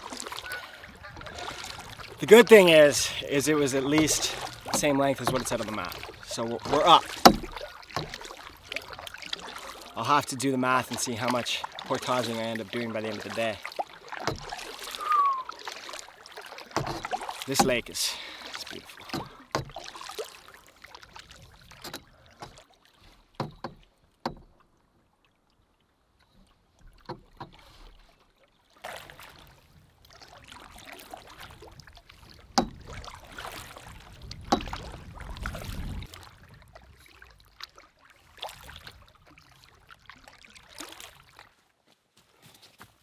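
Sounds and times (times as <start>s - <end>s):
canoe paddle strokes in water: 0.0s - 43.0s
sharp knocks: 7.0s - 8.2s.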